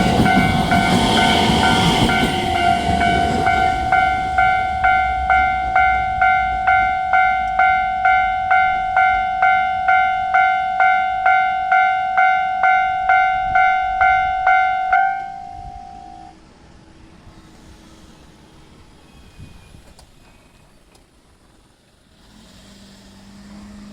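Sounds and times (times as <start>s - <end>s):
level-crossing warning bell: 0.0s - 16.4s.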